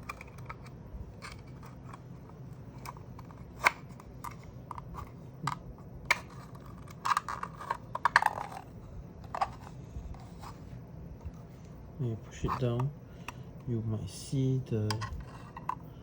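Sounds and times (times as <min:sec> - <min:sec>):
plastic parts clicking and rattling: 0:00.0 - 0:10.6, 0:14.8 - 0:15.8.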